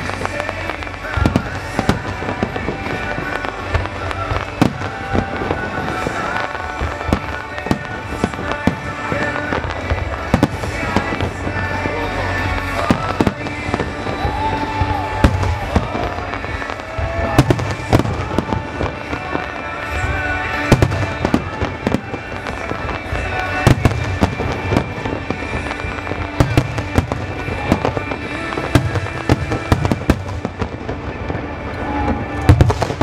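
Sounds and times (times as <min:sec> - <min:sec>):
fireworks bursting with bangs: 0:00.0 - 0:33.0
heavy firework booms: 0:00.0 - 0:33.0
music soundtrack: 0:00.0 - 0:33.0.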